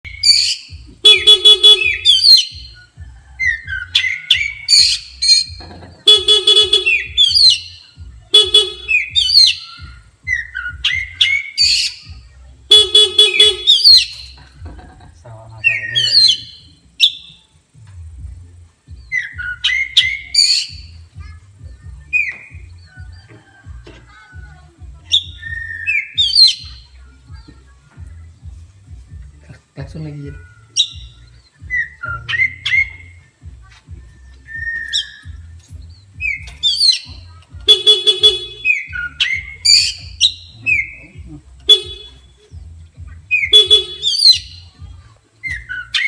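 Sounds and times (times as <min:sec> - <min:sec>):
bird chirping and whistling: 0:00.0 - 0:14.4, 0:15.6 - 0:17.5, 0:18.9 - 0:23.8, 0:25.0 - 0:27.3, 0:30.0 - 0:46.0
buzzy horn: 0:00.2 - 0:02.6, 0:04.8 - 0:09.6, 0:12.7 - 0:14.3, 0:36.7 - 0:42.4, 0:43.3 - 0:44.6.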